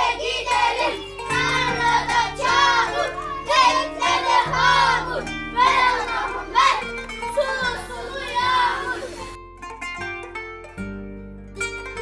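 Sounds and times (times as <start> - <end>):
children singing: 0.0 - 9.4
musical backing: 0.0 - 12.0.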